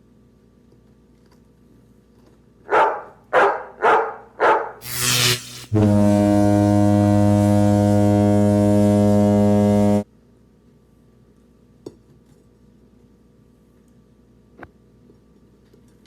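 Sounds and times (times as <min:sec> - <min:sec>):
low horn-like buzzing tone: 0:04.8 - 0:10.0.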